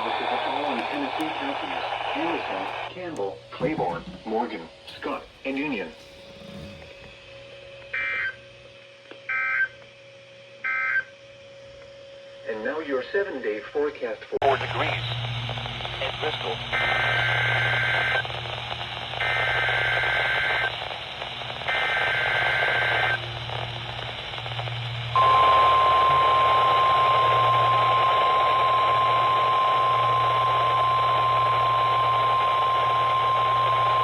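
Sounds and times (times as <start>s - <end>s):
radio static and hum: 0.0s - 7.2s, 12.5s - 34.0s
steady warning alarm tone: 25.1s - 34.0s.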